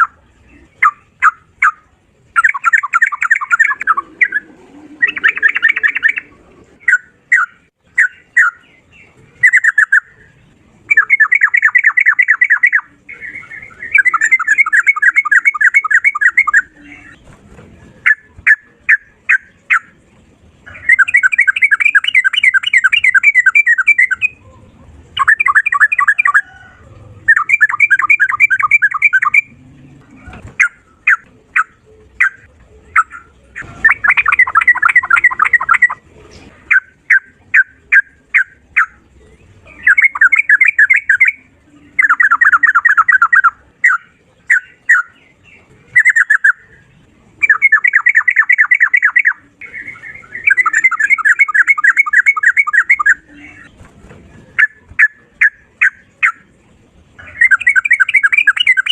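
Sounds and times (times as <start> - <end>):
bird rattling song: 0.8 - 4.4, 10.9 - 20.0, 20.7 - 24.4, 27.3 - 29.5, 30.3 - 36.0, 39.8 - 41.4, 47.4 - 56.5, 57.4 - 58.9
bird sharp chirps: 2.4 - 4.4, 5.0 - 17.3, 27.3 - 29.6, 47.4 - 53.8, 57.2 - 58.9.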